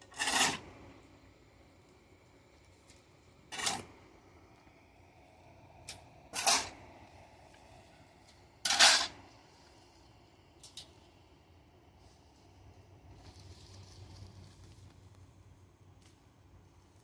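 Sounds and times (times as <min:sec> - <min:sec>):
shovel scraping on concrete: 0:00.0 - 0:00.7, 0:03.5 - 0:03.9, 0:06.4 - 0:06.8, 0:08.6 - 0:09.2.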